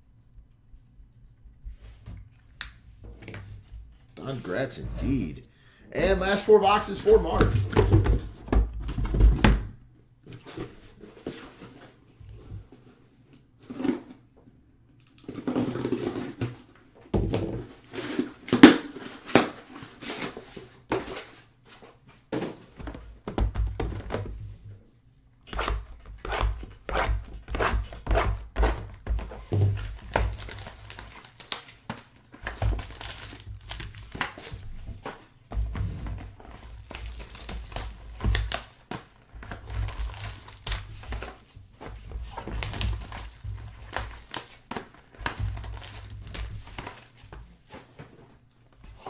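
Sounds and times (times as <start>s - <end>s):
plastic wrap crinkling and tearing: 29.7s - 34.6s, 36.4s - 41.5s, 42.3s - 47.3s.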